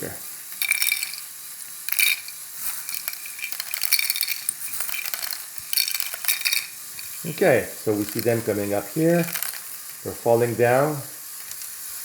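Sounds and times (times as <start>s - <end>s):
plastic pieces clattering: 0.6s - 7.3s, 7.9s - 10.1s, 11.4s - 11.8s.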